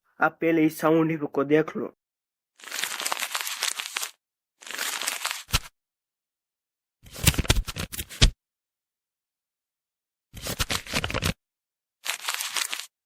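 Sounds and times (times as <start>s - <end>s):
scratchy crackling noise: 12.0s - 12.9s.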